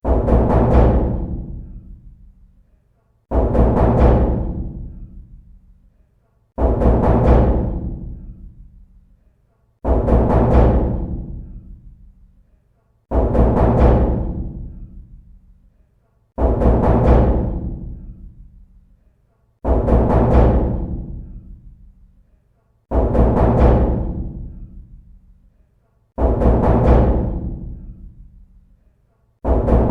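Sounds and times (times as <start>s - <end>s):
knocking on a door: 0.0s - 1.9s, 3.3s - 5.2s, 6.6s - 8.4s, 9.8s - 11.8s, 13.1s - 15.0s, 16.4s - 18.2s, 19.6s - 21.6s, 22.9s - 24.8s, 26.2s - 28.1s, 29.4s - 29.9s.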